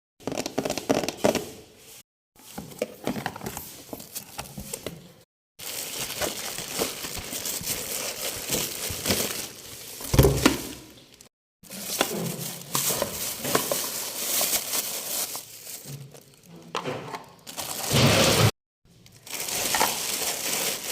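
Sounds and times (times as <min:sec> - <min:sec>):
crinkling and crackling clicks: 0:18.9 - 0:20.9.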